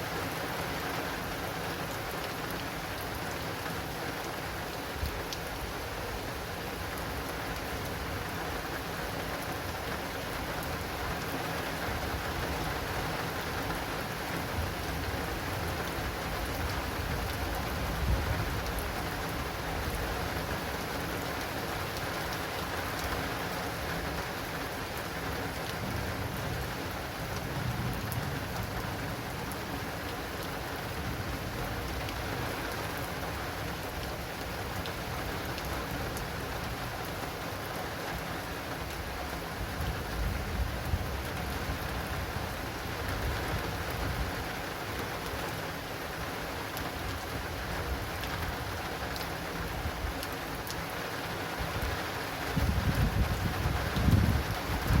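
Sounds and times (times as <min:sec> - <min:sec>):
heavy rain pattering on awning: 0:00.0 - 0:55.0
low thunder rumbles: 0:52.6 - 0:55.0.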